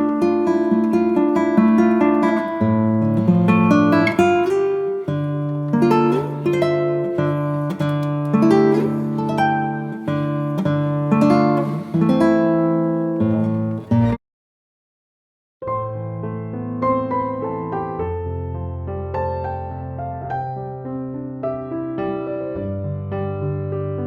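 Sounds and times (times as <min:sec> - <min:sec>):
acoustic guitar melody: 0:00.0 - 0:14.2.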